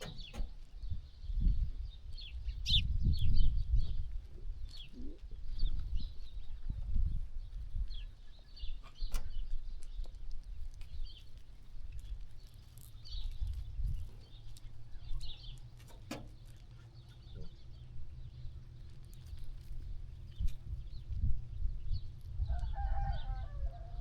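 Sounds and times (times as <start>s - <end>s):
small birds chirping: 0.0s - 23.8s.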